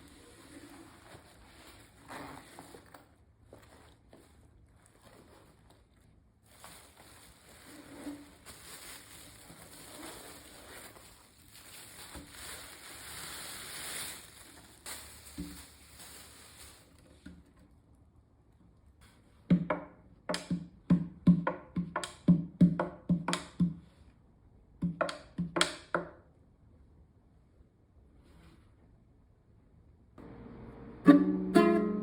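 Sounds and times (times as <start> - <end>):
noisy rustling hiss: 6.7 - 17.2.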